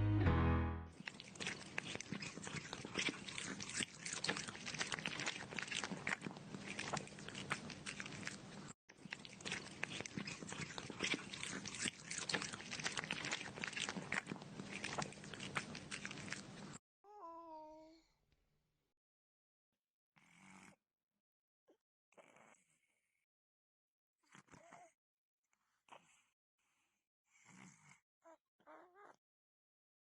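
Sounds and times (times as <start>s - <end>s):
animal chewing crunchy food: 1.0s - 16.8s.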